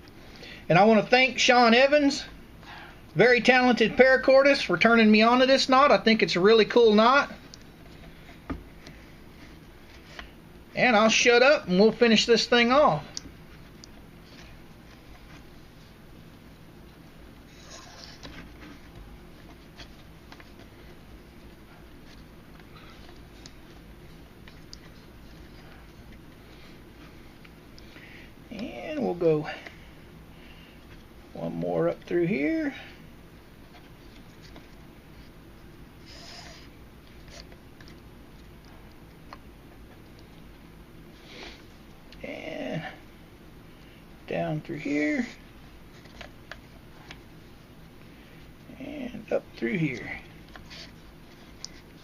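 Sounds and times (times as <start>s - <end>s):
steady low hum: 0.0s - 52.0s
cord rustling and scraping: 13.4s - 29.2s.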